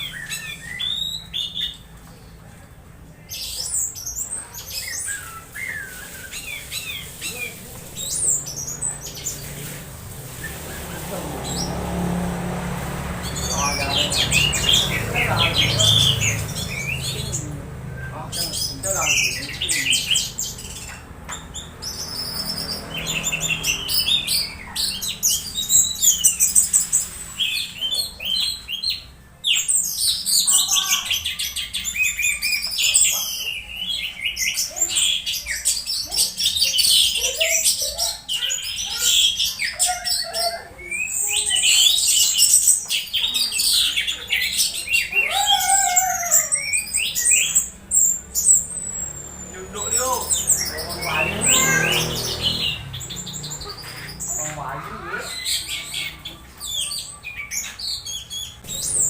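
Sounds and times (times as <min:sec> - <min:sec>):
thrush singing: 0:43.3 - 0:59.0.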